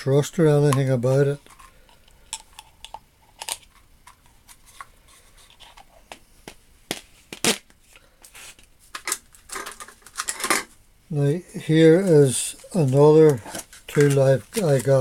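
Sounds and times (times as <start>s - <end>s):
packaging rustling: 8.9s - 10.6s, 12.0s - 15.0s.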